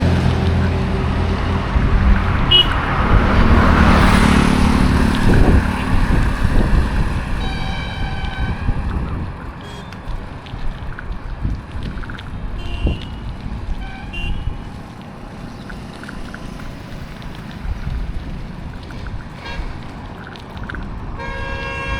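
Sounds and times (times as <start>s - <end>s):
auto rickshaw engine passing: 0.0s - 21.9s
traffic noise: 0.0s - 21.9s
vehicle horns honking: 2.4s - 3.0s, 7.4s - 8.8s, 12.6s - 13.2s, 13.8s - 14.6s, 21.2s - 21.9s.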